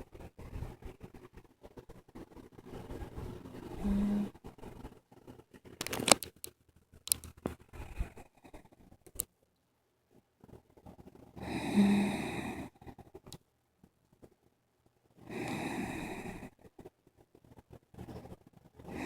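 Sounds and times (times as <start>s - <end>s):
person snorting in sleep: 2.8s - 4.4s, 11.4s - 13.1s, 15.2s - 16.6s, 18.0s - 19.0s
clicks and rustling: 5.7s - 7.6s.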